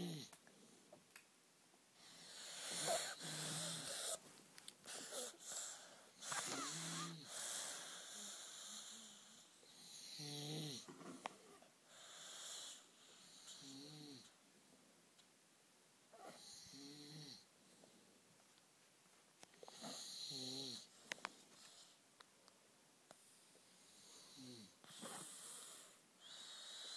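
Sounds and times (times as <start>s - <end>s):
people snoring: 2.2s - 4.2s, 4.9s - 9.2s.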